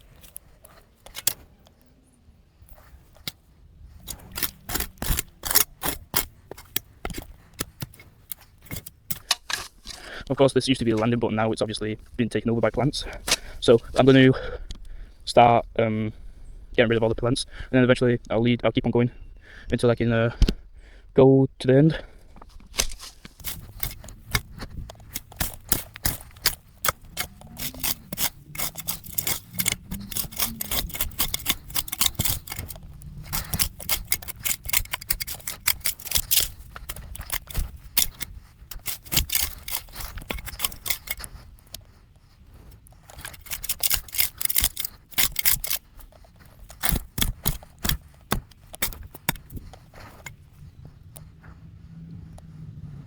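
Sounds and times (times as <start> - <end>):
plants crackling and snapping: 2.7 - 10.3, 22.4 - 41.8, 43.0 - 50.4.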